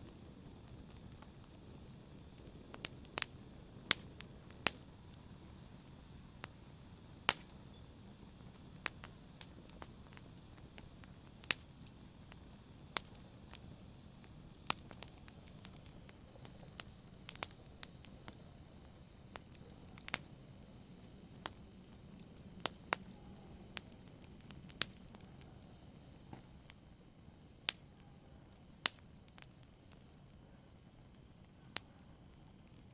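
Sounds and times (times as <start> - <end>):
fire hissing: 0.0 - 32.9
wood logs crackling and popping: 0.1 - 6.6, 21.0 - 26.8.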